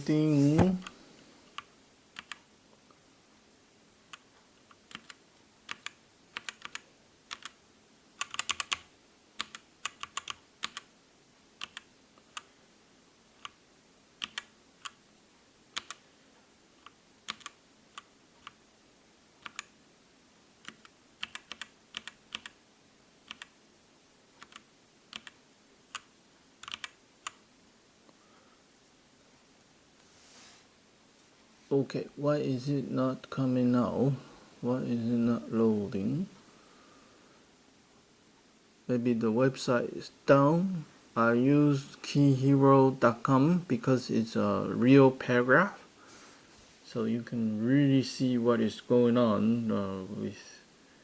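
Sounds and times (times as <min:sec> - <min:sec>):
mechanical keyboard keystrokes: 0:04.9 - 0:07.6, 0:08.2 - 0:10.9, 0:14.2 - 0:15.0, 0:17.3 - 0:18.6, 0:20.6 - 0:22.6, 0:26.6 - 0:27.4.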